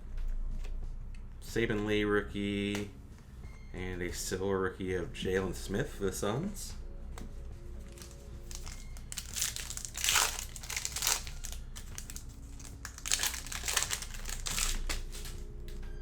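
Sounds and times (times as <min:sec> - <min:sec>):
foil wrapper crinkling: 0:07.9 - 0:15.8.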